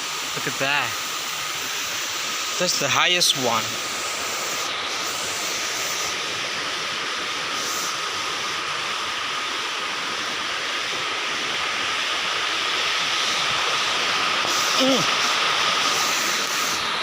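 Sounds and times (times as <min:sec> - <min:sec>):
waterfall pouring: 0:00.0 - 0:17.0
thin steady high tone: 0:14.4 - 0:16.9.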